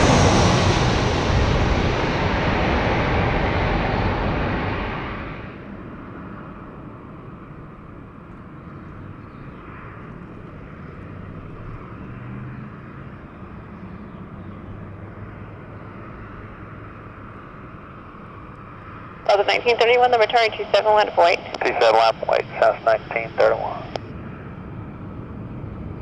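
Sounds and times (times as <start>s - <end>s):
distant jet engine noise: 0.0s - 8.1s, 13.4s - 26.0s
faint low hum: 19.3s - 24.0s.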